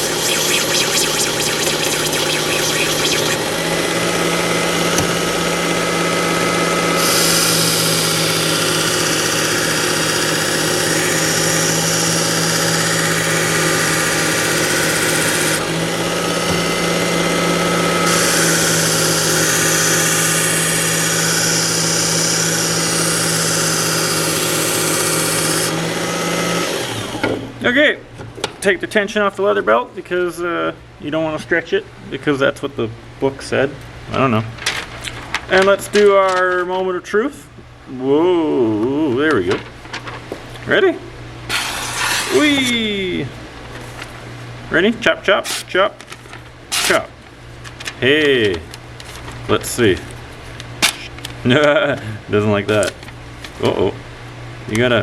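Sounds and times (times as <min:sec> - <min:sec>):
sharpener motor humming: 0:00.0 - 0:27.2, 0:41.5 - 0:42.8.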